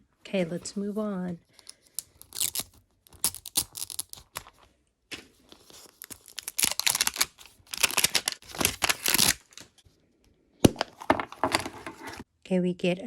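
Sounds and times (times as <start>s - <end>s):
packaging crinkling: 1.5s - 9.8s.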